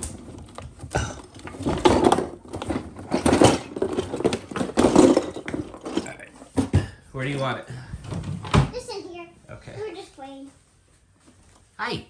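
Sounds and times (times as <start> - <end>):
objects clattering and rustling: 0.0 - 8.9.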